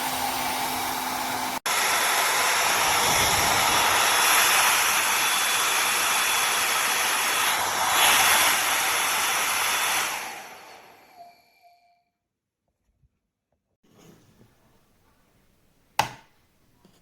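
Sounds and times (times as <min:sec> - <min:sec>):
hair dryer blowing: 0:00.0 - 0:11.4.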